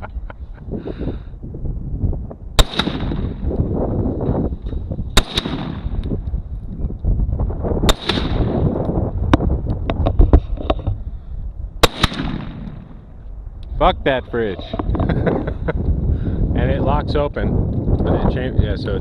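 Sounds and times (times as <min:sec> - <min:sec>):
low wind rumble: 0:00.0 - 0:19.0
rifle shots with ringing echo: 0:02.6 - 0:03.5, 0:05.1 - 0:06.2, 0:07.9 - 0:08.7, 0:11.8 - 0:13.2.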